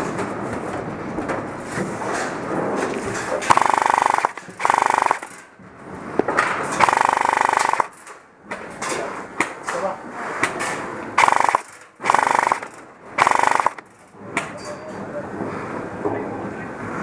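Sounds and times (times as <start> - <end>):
airsoft gun firing bursts: 3.5 - 5.4, 6.8 - 8.0, 11.2 - 13.8.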